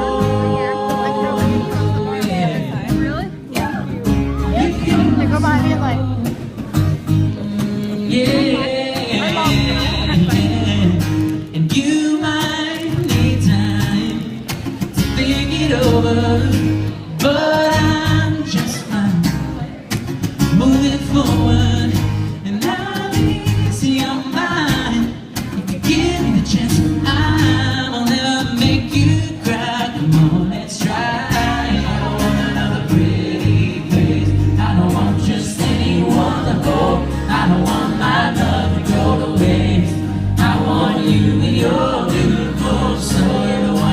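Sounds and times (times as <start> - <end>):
person singing: 0.0 - 2.8, 7.3 - 14.4
amplified pop band: 0.0 - 43.9.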